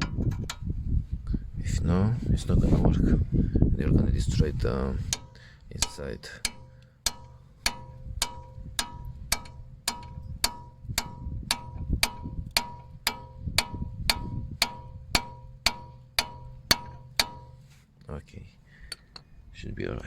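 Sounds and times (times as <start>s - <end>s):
hammer striking metal bit: 5.0s - 17.7s.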